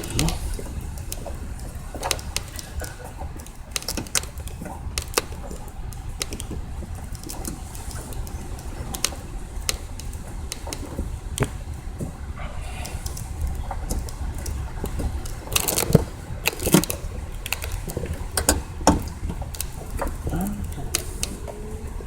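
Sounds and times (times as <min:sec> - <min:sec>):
low rumble: 0:05.6 - 0:22.0
clicks and knocks of parts: 0:13.9 - 0:21.6.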